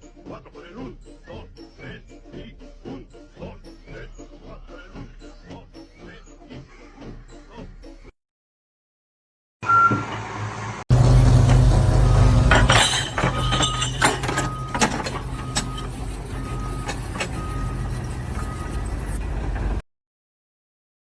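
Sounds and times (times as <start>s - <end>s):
reversing alarm beeping: 9.6s - 10.2s, 12.0s - 12.5s, 13.4s - 19.1s
heavy vehicle engine running: 9.7s - 19.8s
metal clanks and knocks: 11.3s - 16.0s.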